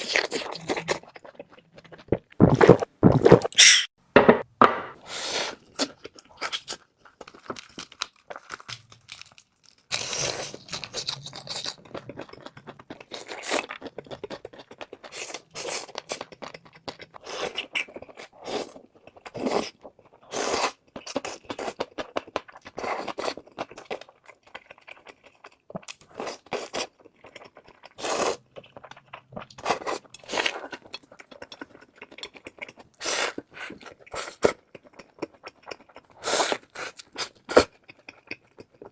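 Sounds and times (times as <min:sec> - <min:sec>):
crunching and chewing food: 0:00.0 - 0:03.6, 0:05.4 - 0:38.9
scraping sounds: 0:02.4 - 0:05.0.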